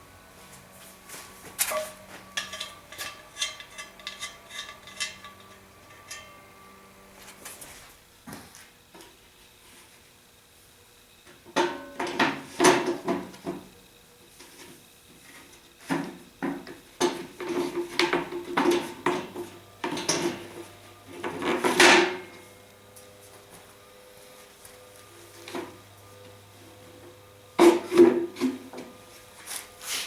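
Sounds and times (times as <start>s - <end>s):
scrape: 29.3s - 30.0s.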